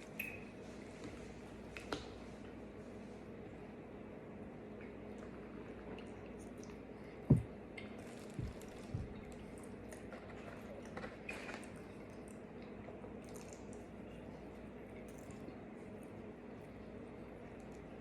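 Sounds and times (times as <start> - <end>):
steady low hum: 0.0 - 18.0
person chewing food: 6.6 - 12.7
dull thumps: 7.3 - 7.6, 8.3 - 9.3.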